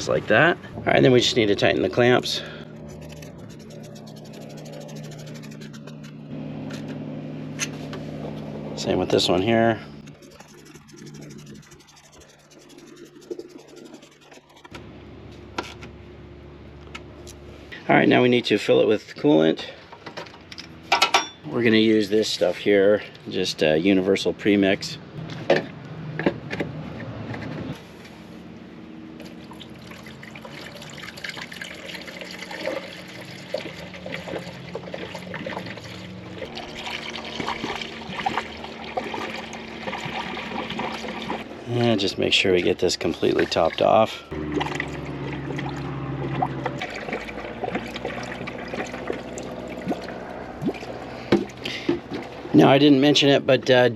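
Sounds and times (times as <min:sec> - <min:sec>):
coolant pouring through funnel: 0:29.2 - 0:41.5, 0:43.0 - 0:52.5.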